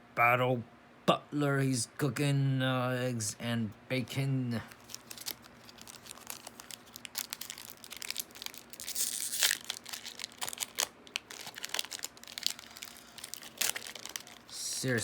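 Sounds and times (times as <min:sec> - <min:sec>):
foil wrapper crinkling: 0:04.6 - 0:15.0.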